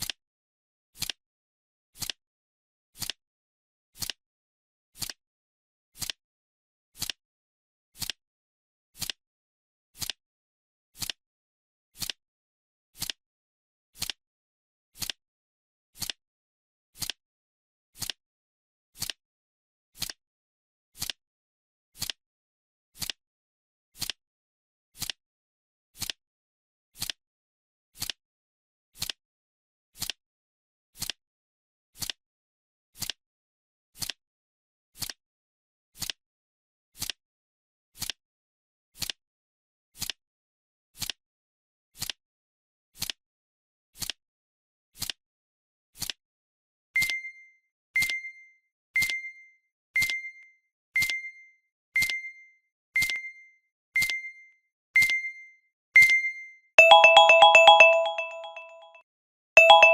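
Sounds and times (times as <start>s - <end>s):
timer ticking: 56.8s - 58.9s.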